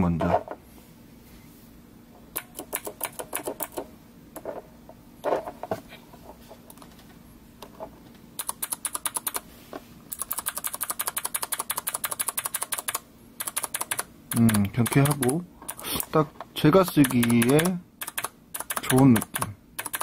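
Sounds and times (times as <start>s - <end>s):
mechanical keyboard switch clicks: 16.9s - 20.0s.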